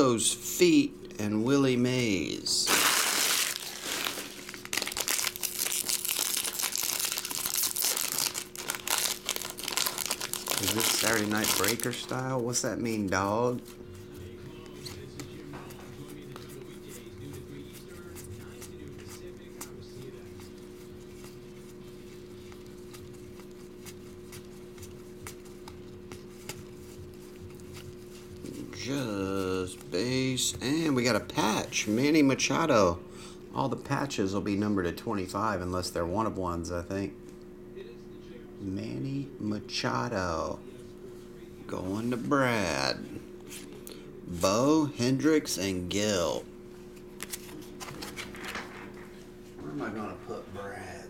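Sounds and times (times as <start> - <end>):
steady low hum: 0.0 - 51.0
foil wrappers crinkling and tearing: 2.6 - 13.8.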